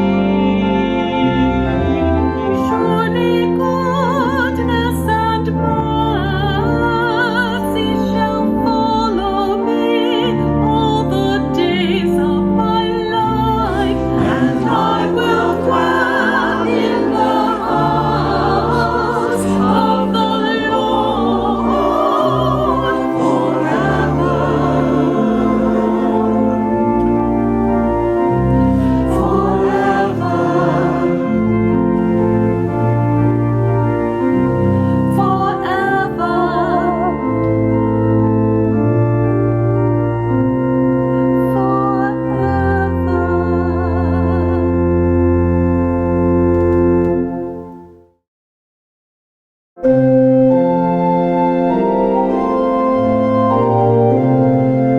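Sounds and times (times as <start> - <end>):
organ chords: 0.0 - 48.1, 49.8 - 54.9
choir singing a hymn: 13.1 - 37.4.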